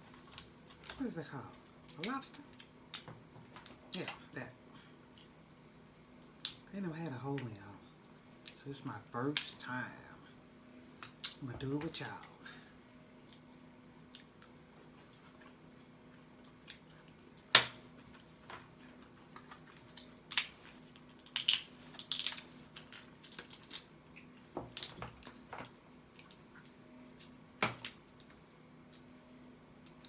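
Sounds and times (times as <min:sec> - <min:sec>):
lobster shell cracking: 0:19.2 - 0:26.5, 0:27.2 - 0:29.1.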